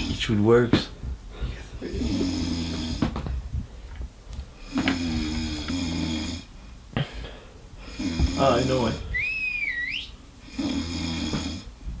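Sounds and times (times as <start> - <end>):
man snoring: 1.8 - 3.1, 4.6 - 6.5, 7.8 - 9.1, 10.4 - 11.7.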